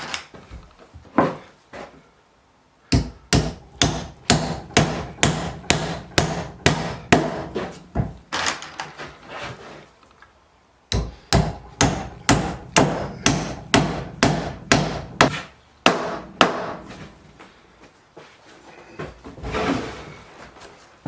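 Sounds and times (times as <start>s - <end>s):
hammer driving nail into wood: 3.0s - 7.6s, 10.9s - 16.8s.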